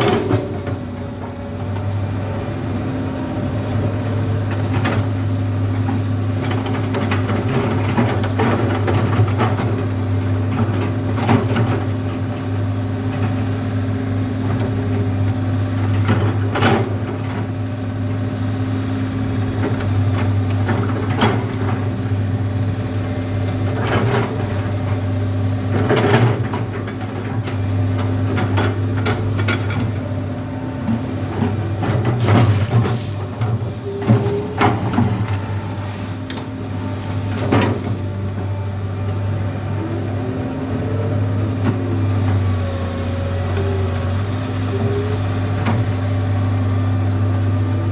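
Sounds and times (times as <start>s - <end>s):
excavator diesel engine running: 0.0s - 47.9s
bucket clanking and scraping gravel: 31.2s - 38.3s.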